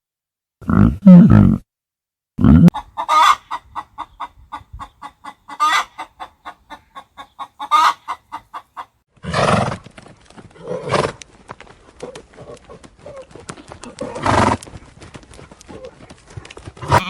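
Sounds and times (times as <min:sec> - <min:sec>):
chicken cackles: 0:02.7 - 0:09.0
chickens clucking: 0:02.7 - 0:09.0.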